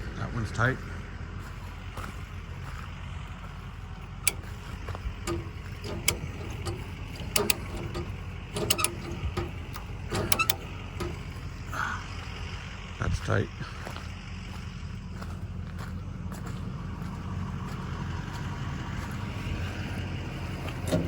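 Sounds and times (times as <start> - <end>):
vehicle engine idling: 0.0 - 21.0
tire chains clinking: 3.4 - 13.0, 13.9 - 21.0.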